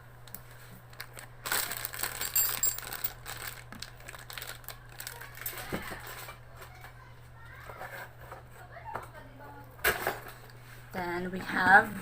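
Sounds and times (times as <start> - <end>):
packaging rustling: 0.8 - 6.1
small metal parts clinking: 1.4 - 4.5.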